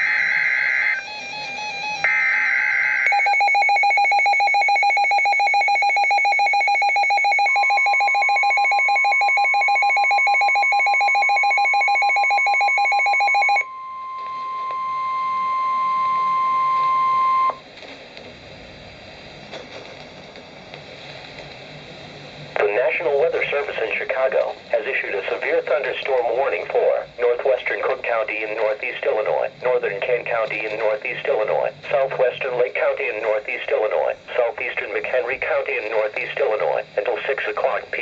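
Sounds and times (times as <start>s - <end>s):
steady warning alarm tone: 0.0s - 17.6s
fast-pulsing alarm beep: 0.4s - 17.6s
faint static hiss: 16.0s - 38.0s.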